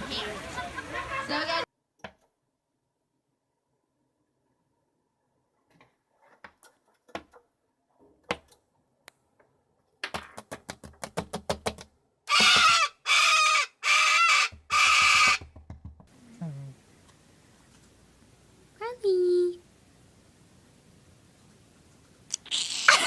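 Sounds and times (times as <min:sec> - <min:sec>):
loud drawn-out animal calls: 0:12.3 - 0:15.4.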